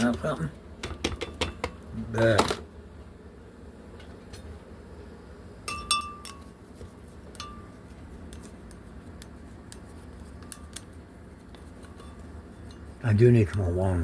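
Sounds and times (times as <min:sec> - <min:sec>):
glass containers clinking: 0:05.7 - 0:06.5.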